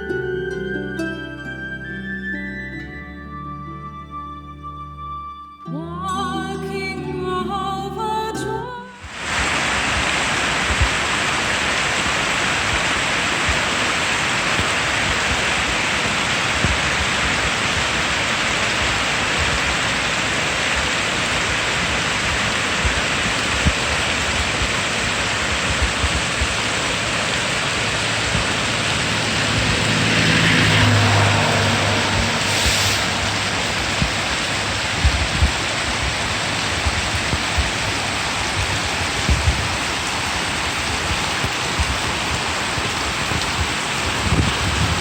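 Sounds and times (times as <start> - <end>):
background music: 0.0 - 9.0
rushing water in heavy rain: 9.0 - 45.0.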